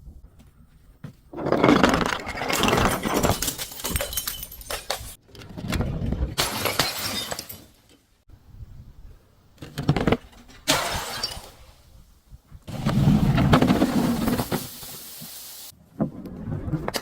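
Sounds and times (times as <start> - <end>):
glass bottle being crushed: 2.2 - 5.2, 6.4 - 7.6.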